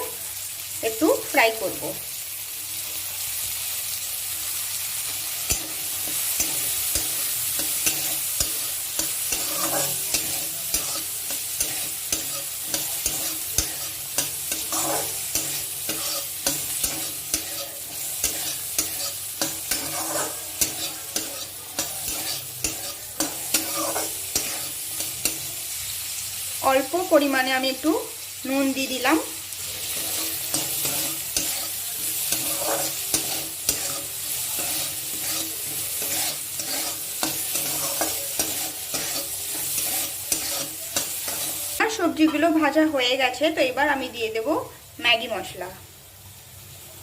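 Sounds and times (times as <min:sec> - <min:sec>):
vegetables sizzling in butter: 0:00.0 - 0:47.0
spatula scraping a pan: 0:05.3 - 0:25.7, 0:29.6 - 0:41.8.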